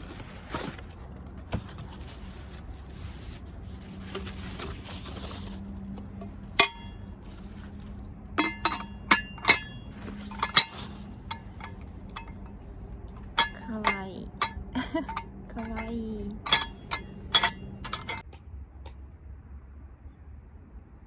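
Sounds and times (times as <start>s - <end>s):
dishes clinking together: 13.3s - 18.2s.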